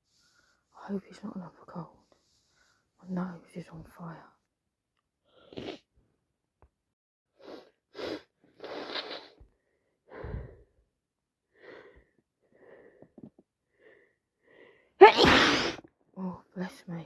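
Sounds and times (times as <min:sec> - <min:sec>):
woman sniffing congested nose: 0:05.3 - 0:05.9, 0:07.4 - 0:09.5, 0:15.1 - 0:15.8.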